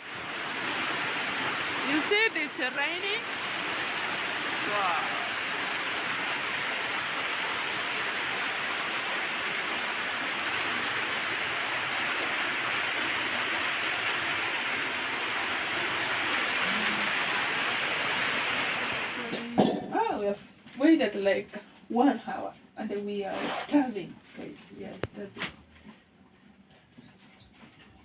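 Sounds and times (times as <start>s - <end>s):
steady rain falling: 0.0s - 22.0s.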